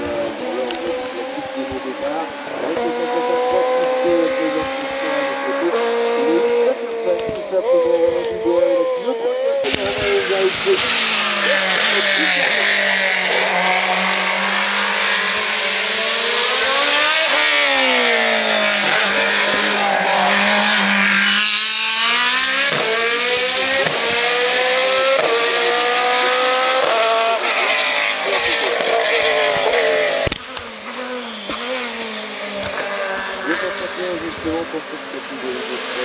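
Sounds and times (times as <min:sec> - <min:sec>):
race car engine revving: 0:00.0 - 0:36.0.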